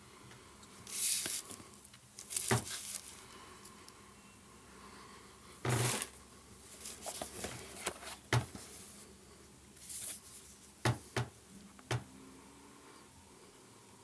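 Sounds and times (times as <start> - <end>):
packaging rustling: 0.8 - 3.2, 5.7 - 8.7.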